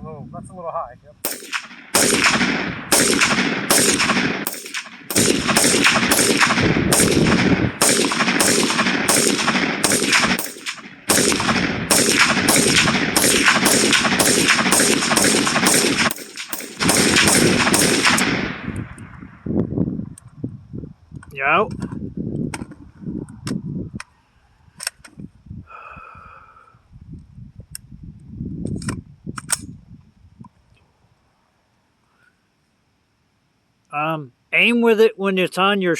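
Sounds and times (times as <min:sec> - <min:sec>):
rifle shots with ringing echo: 0:01.2 - 0:19.0.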